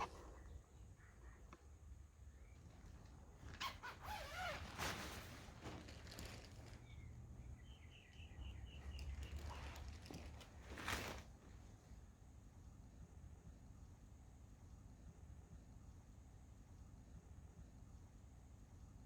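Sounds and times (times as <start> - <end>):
soft rustles: 2.6 - 7.0, 8.8 - 12.0.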